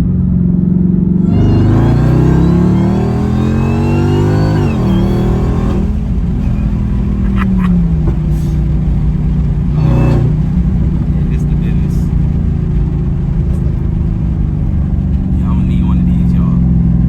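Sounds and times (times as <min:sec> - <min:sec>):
car engine accelerating hard: 0:00.0 - 0:17.0.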